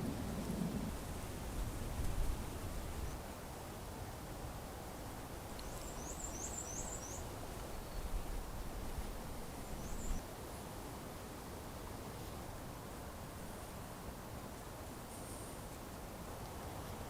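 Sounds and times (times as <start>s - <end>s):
songbird chirping: 5.6s - 8.2s.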